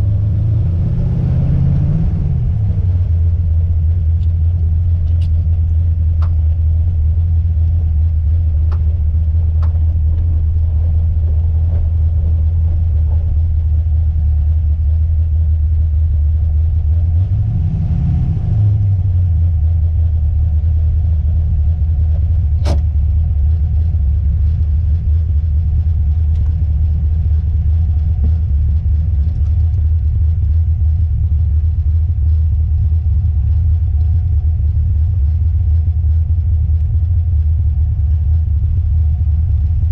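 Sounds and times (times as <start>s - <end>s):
car driving drone: 0.0s - 39.9s
sharp clicks from car rear: 5.0s - 5.6s, 6.2s - 6.6s, 8.7s - 9.0s, 9.6s - 10.3s, 22.6s - 23.0s.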